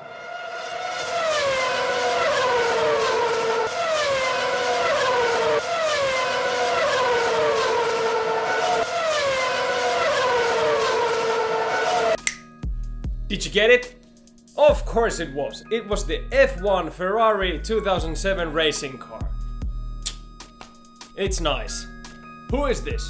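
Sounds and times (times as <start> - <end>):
racing car engine screaming: 0.0 - 12.2.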